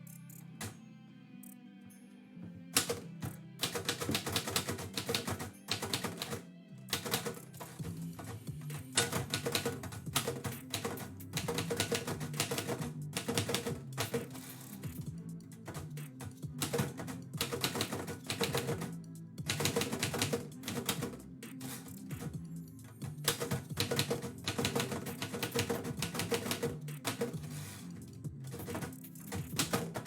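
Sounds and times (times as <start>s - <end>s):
background music: 0.0s - 30.0s
typewriter keystrokes: 3.6s - 7.8s, 8.8s - 14.5s, 15.7s - 18.9s, 19.5s - 22.3s, 23.2s - 27.8s, 28.5s - 30.0s.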